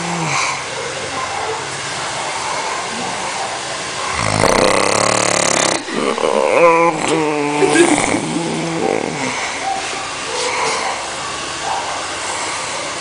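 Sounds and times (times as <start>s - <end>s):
man snoring heavily: 4.1s - 9.6s.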